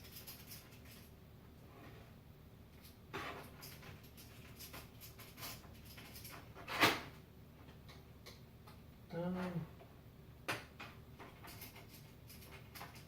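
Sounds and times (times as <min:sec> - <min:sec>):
faint steady hum: 0:00.0 - 0:13.0
clicks of handling fan and screws: 0:10.5 - 0:13.0.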